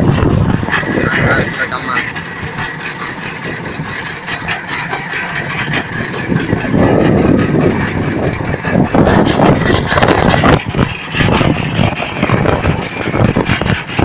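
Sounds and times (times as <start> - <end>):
boat engine running: 0.0 - 14.0.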